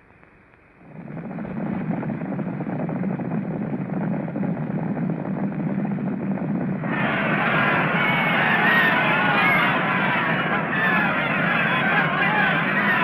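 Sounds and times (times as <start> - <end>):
crowd noise: 6.8 - 13.0.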